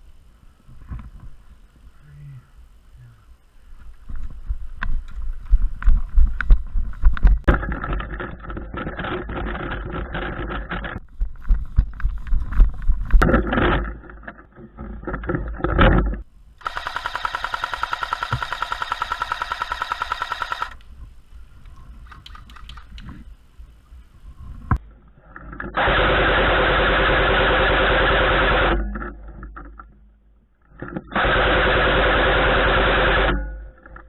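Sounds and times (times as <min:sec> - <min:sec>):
rumbling thumping movement noise: 0:03.8 - 0:16.4
airsoft machine gun automatic burst: 0:16.6 - 0:20.8, 0:25.8 - 0:28.8, 0:31.1 - 0:33.4.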